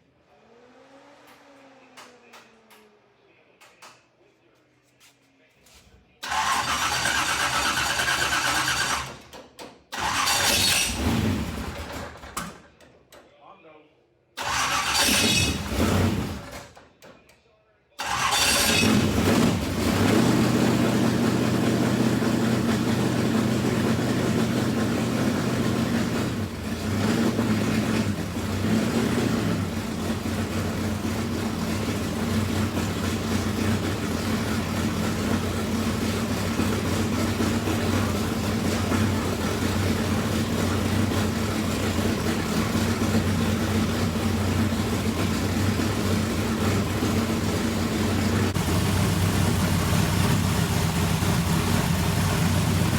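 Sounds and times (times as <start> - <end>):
car engine idling: 18.0 - 52.9.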